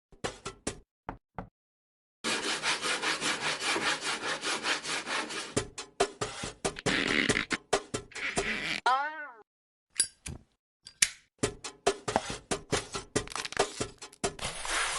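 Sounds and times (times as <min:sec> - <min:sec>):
hand saw cutting wood: 0:02.2 - 0:05.6.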